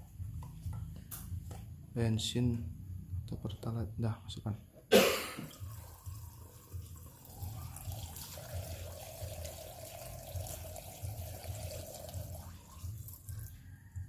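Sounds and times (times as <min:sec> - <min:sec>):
liquid pouring into container: 0:05.5 - 0:13.6.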